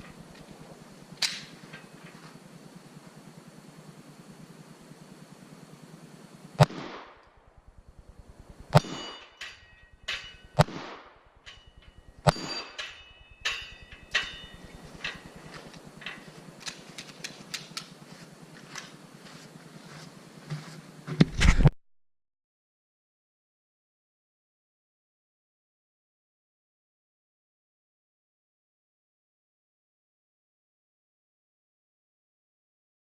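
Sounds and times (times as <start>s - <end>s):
gunshots: 6.6s - 7.2s, 8.7s - 9.4s, 10.1s - 11.2s, 12.2s - 15.4s
metallic clinks and clicks: 8.8s - 10.6s, 11.4s - 17.9s.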